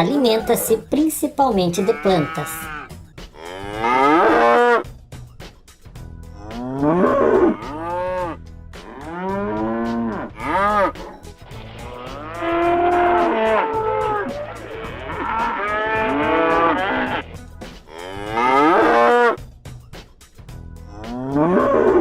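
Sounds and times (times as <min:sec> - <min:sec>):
cattle mooing: 0:01.7 - 0:04.8, 0:06.4 - 0:11.2, 0:11.9 - 0:19.4, 0:21.0 - 0:22.0.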